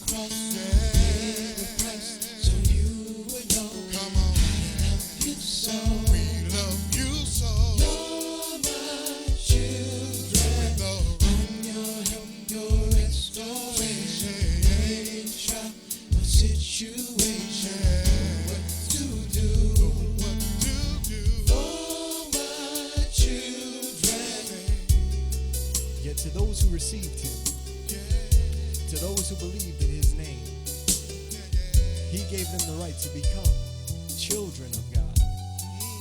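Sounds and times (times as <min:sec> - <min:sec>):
gospel song with vibrato voice: 0:00.0 - 0:36.0
bass and drums: 0:00.7 - 0:05.3, 0:05.9 - 0:08.2, 0:09.3 - 0:11.7, 0:12.7 - 0:13.4, 0:14.2 - 0:15.1, 0:16.1 - 0:22.3, 0:24.7 - 0:36.0.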